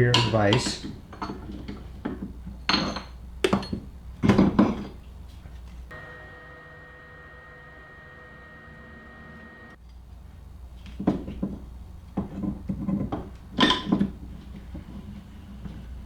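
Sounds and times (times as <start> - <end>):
metal clanks and knocks: 0.0 - 5.0
steady tonal hum: 5.9 - 9.8.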